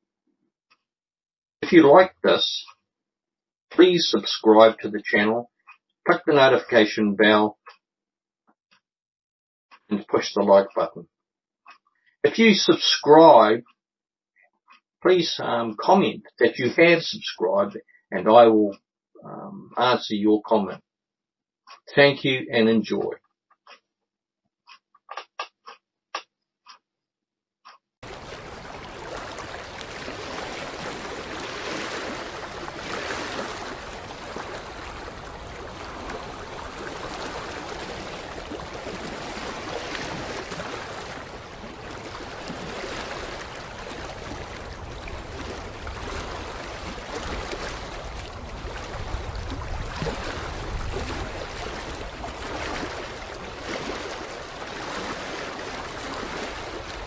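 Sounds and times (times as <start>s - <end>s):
water lapping at shoreline: 28.0s - 57.0s.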